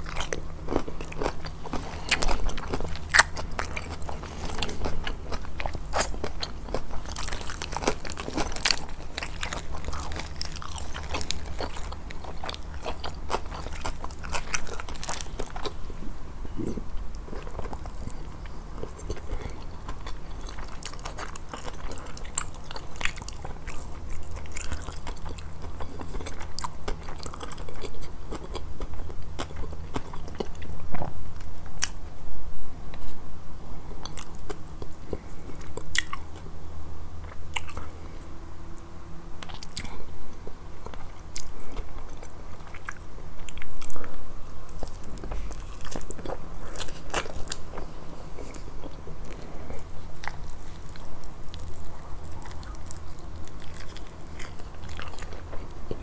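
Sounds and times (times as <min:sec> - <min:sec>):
wet chewing: 0:00.0 - 0:31.1, 0:40.8 - 0:56.0
crunchy crackles: 0:00.0 - 0:32.0.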